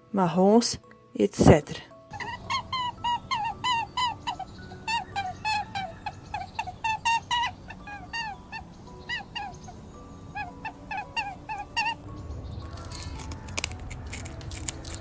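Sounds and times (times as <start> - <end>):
faint background music: 0.0 - 15.0
animal squeaky calls: 2.2 - 12.0.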